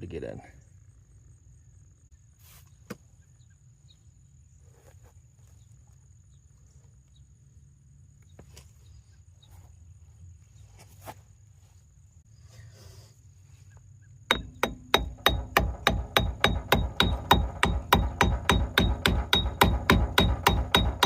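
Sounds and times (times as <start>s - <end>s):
steady low hum: 5.5s - 21.0s.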